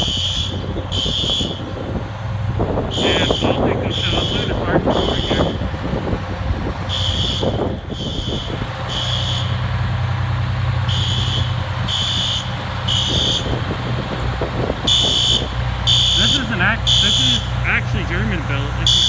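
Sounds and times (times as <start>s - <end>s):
fire alarm horn blasts: 0.0s - 2.0s, 2.6s - 19.0s
fire engine idling: 0.0s - 19.0s.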